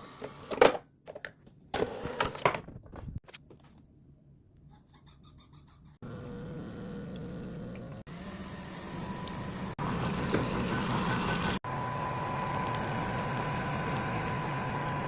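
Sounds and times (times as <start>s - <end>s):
coffee machine humming: 6.0s - 15.0s.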